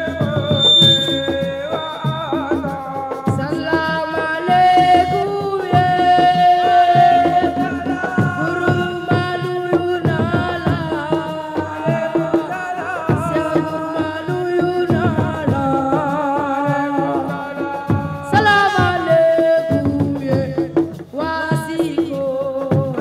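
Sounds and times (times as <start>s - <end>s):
music with drum beat: 0.0s - 23.0s.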